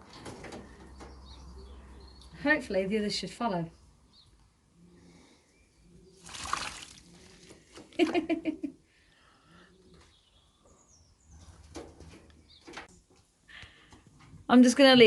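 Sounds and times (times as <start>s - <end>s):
water splash: 6.2s - 7.0s.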